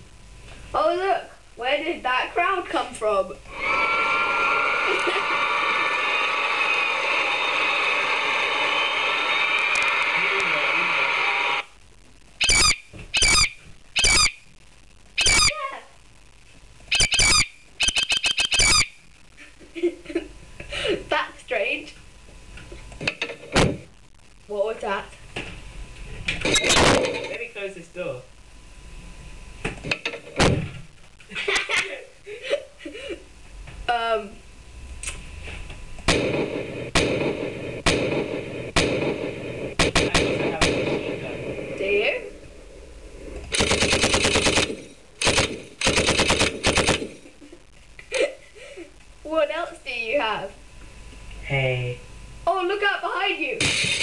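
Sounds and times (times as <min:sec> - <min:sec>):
harsh bird squawks: 0:12.4 - 0:14.5, 0:15.2 - 0:15.6, 0:16.9 - 0:19.1
sharp bangs: 0:36.0 - 0:41.7, 0:43.5 - 0:47.2, 0:53.6 - 0:54.0.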